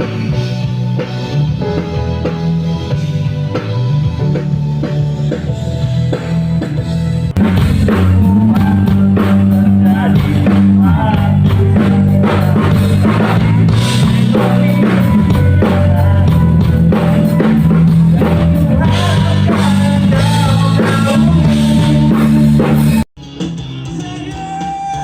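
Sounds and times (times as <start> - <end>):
live rock band playing: 0.0 - 25.0.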